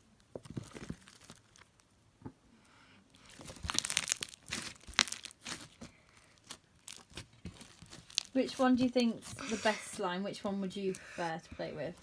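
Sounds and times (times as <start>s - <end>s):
crunchy slime crackling pops: 3.2s - 9.4s.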